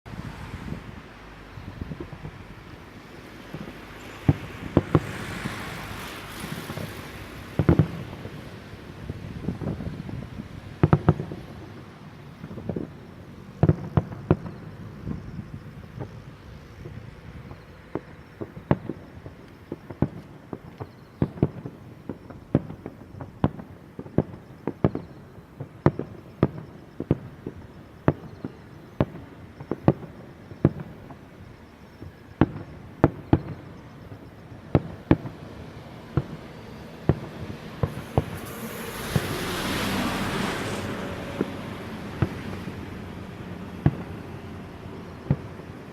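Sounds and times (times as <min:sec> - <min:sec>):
wind noise on microphone: 0:00.1 - 0:28.4, 0:29.0 - 0:45.9
firework shell bursts: 0:03.2 - 0:08.5, 0:36.1 - 0:43.0.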